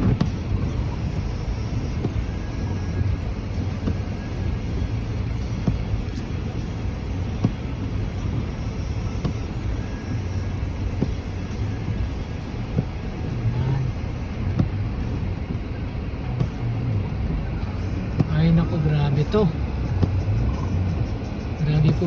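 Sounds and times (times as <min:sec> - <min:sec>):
engine and road rumble: 0:00.0 - 0:22.0.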